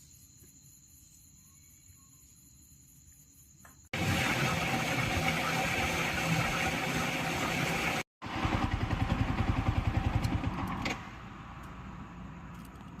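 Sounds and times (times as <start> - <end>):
motor engine running: 4.0 - 11.3.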